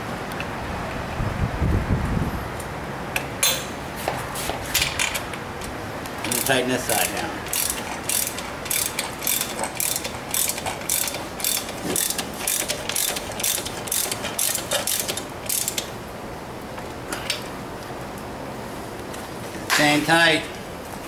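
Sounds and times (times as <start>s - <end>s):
ratchet wrench clicking: 6.3s - 15.9s.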